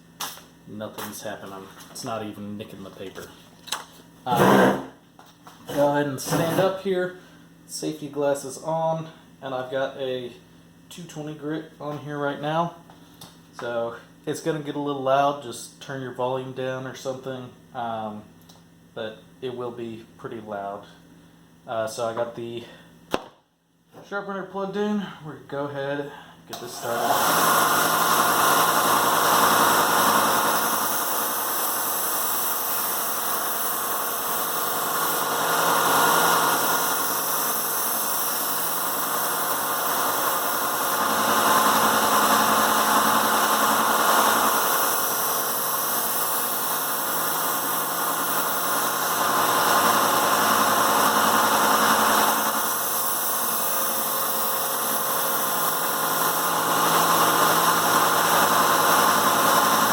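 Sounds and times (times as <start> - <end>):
belt sander running: 4.3 - 4.9, 26.5 - 59.9.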